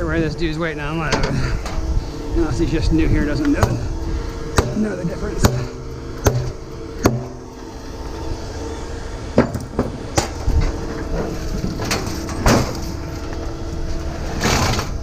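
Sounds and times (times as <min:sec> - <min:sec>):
steady machinery hum: 0:00.0 - 0:15.0
scrap metal clanking onto pile: 0:10.2 - 0:13.3, 0:14.3 - 0:15.0.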